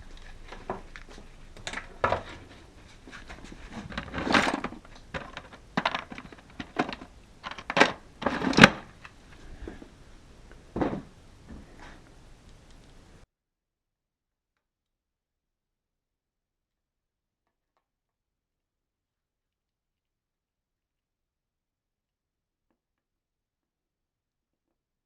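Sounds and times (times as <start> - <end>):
tools clicking and knocking: 3.1 - 9.2.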